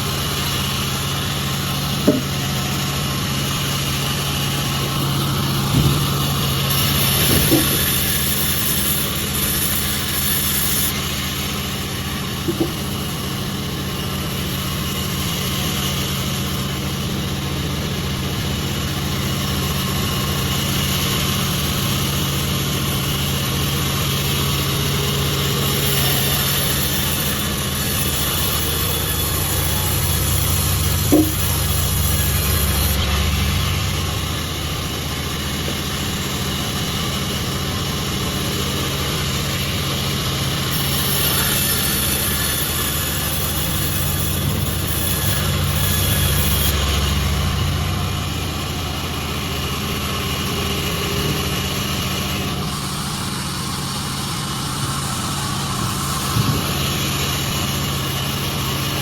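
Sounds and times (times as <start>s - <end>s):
sawmill machinery humming: 0.0s - 59.0s
sharp knock: 2.1s - 2.4s, 30.5s - 32.9s.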